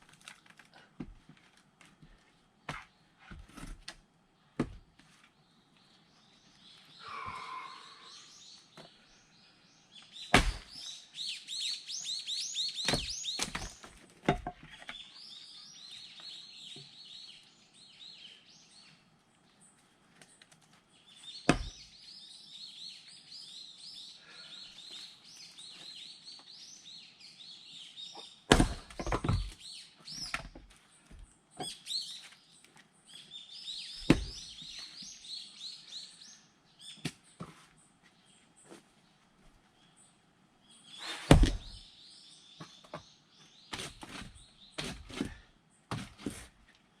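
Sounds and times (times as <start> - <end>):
axe splitting firewood: 0.0 - 2.0, 2.7 - 4.0, 10.3 - 10.8, 12.8 - 15.0, 21.4 - 21.8, 28.5 - 29.6, 34.0 - 34.4, 41.0 - 41.8, 43.7 - 46.6
birds chirping: 5.2 - 13.9
wood knocks and clatter: 12.9 - 15.0, 28.5 - 29.6.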